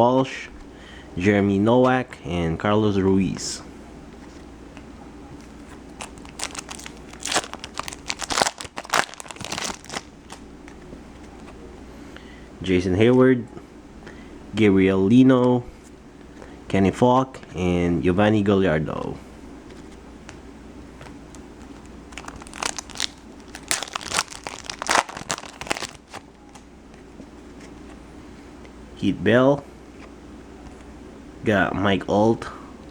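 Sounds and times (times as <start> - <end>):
foil wrapper crinkling and tearing: 6.0 - 10.4, 22.1 - 26.3.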